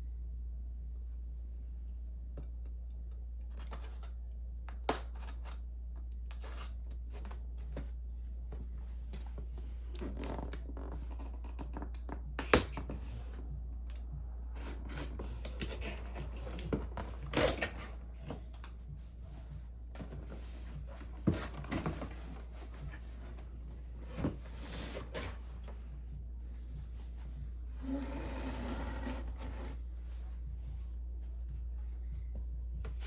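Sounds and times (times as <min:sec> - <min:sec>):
steady low hum: 0:00.0 - 0:33.0
boxes knocking and thunking: 0:15.1 - 0:25.6.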